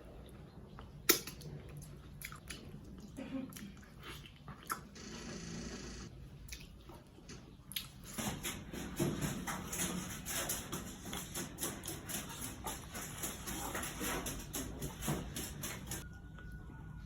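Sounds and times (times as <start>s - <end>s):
mouth chewing and smacking: 0.0s - 5.0s, 6.4s - 8.2s.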